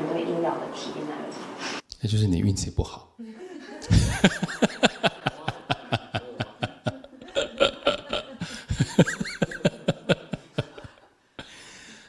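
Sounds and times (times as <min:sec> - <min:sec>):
hearty laughter: 0:03.3 - 0:11.2.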